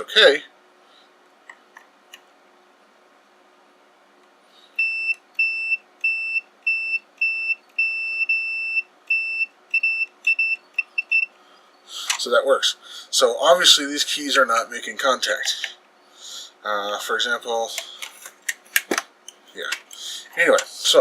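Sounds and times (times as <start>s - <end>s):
multimeter continuity beeps: 4.8s - 11.4s.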